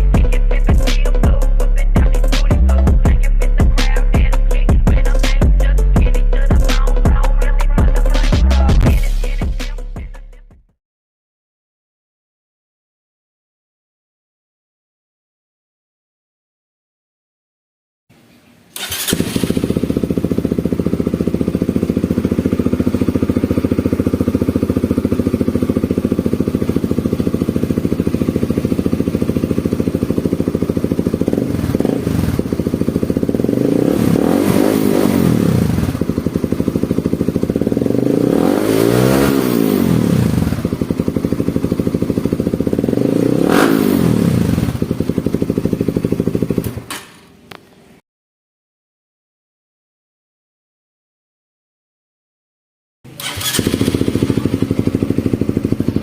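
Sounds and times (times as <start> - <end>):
motorcycle engine idling and revving: 0.0 - 10.7, 18.8 - 47.8, 53.1 - 56.0.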